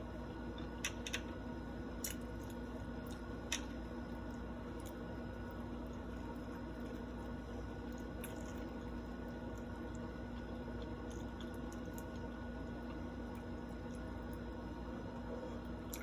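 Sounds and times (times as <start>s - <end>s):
low electrical hum: 0.0s - 16.0s
chewing food: 2.0s - 16.0s.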